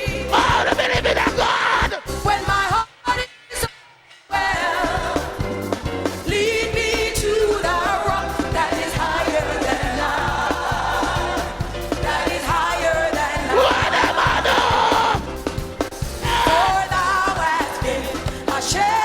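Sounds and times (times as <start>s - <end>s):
song with singing voices: 0.0s - 19.0s
heavy pulsing bass line: 5.2s - 17.2s.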